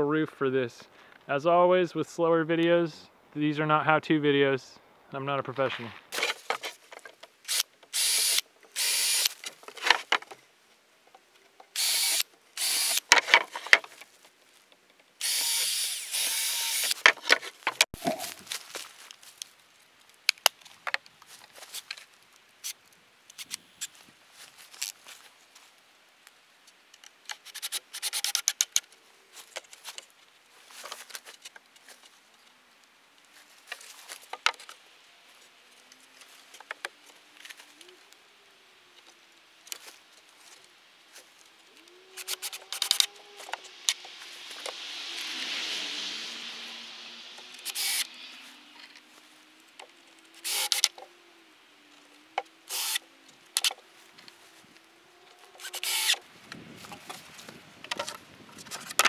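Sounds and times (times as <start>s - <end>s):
wood scraping and rubbing: 5.8s - 8.2s, 8.8s - 10.4s, 12.6s - 14.1s, 42.1s - 49.1s
wooden boards clacking and knocking: 13.1s - 13.9s
broad rushing noise: 42.1s - 50.5s.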